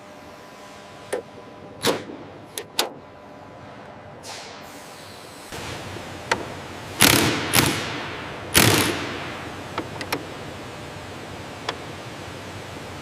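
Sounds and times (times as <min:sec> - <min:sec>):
background hum: 0:00.0 - 0:13.0
loud clunks with hiss: 0:04.2 - 0:05.8.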